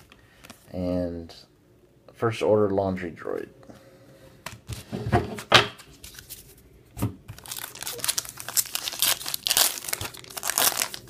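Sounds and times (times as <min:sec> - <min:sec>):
plastic wrapper crinkling: 0:07.3 - 0:11.0
wrapper being torn open: 0:07.4 - 0:11.0.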